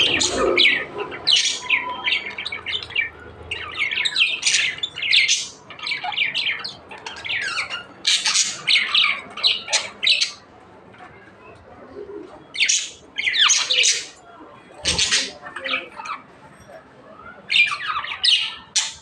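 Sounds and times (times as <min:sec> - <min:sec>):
budgerigars chattering: 0:00.0 - 0:10.5.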